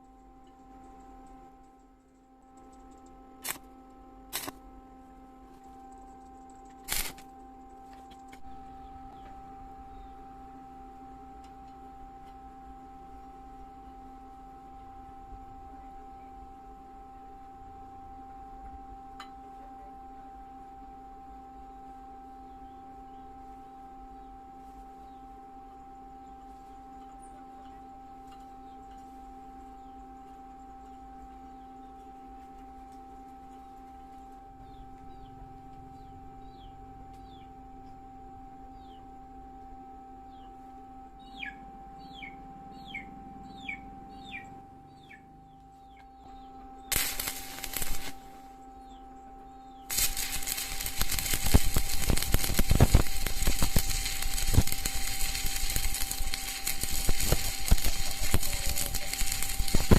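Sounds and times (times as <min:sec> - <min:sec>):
steady background hum: 0:00.0 - 0:59.9
welding arc crackling: 0:02.6 - 0:03.7, 0:04.3 - 0:04.6, 0:05.5 - 0:08.5, 0:46.9 - 0:48.5, 0:49.9 - 0:59.9
small birds chirping: 0:26.1 - 0:39.4, 0:40.0 - 0:59.9.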